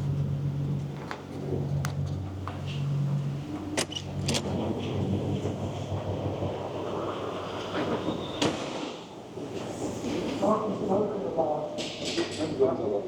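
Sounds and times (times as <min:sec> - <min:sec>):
vehicle engine humming: 0:00.0 - 0:08.2.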